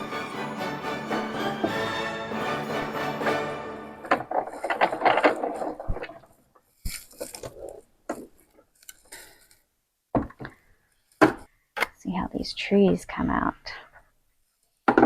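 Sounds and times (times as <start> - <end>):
background music: 0.0 - 4.5.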